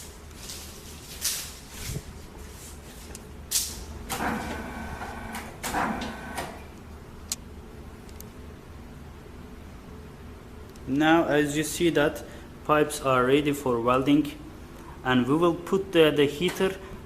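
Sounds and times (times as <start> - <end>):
low machine hum: 0.0 - 17.0
machine carriage mechanical bursts: 4.1 - 6.7.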